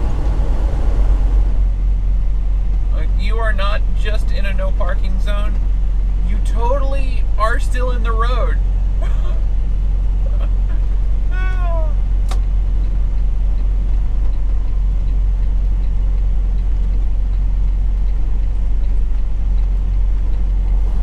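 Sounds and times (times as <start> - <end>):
truck engine and road noise: 0.0 - 21.0
turn signal ticking: 9.8 - 21.0
sharp click: 12.2 - 12.5.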